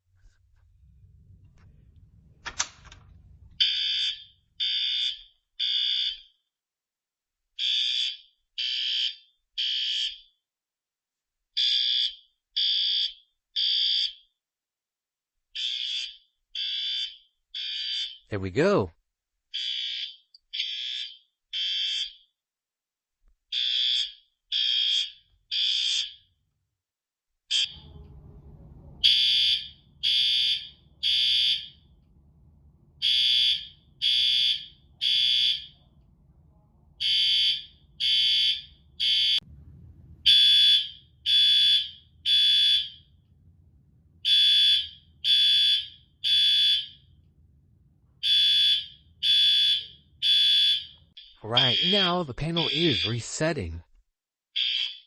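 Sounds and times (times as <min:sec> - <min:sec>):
fire alarm horns pulsing: 0:03.2 - 0:06.2, 0:07.6 - 0:10.2, 0:11.6 - 0:14.2, 0:15.6 - 0:18.5, 0:19.6 - 0:22.2, 0:23.5 - 0:26.2, 0:27.5 - 0:35.9, 0:37.0 - 0:43.3, 0:44.2 - 0:47.2, 0:48.2 - 0:53.6, 0:54.6 - 0:55.0.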